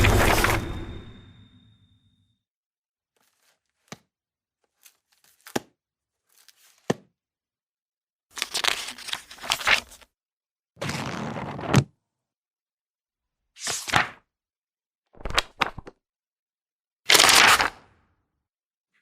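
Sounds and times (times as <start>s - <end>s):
paper rustling: 3.2s - 7.0s, 8.4s - 10.1s.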